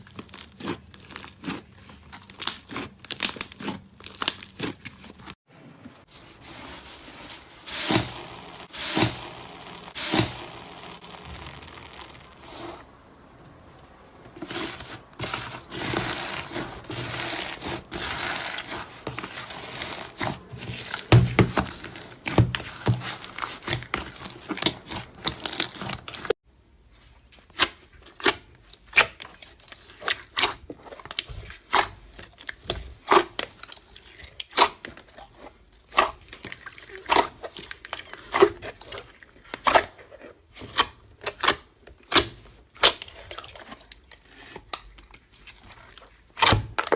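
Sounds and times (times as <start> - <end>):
slime squeezed crackling: 0.0 - 5.3, 7.5 - 26.3.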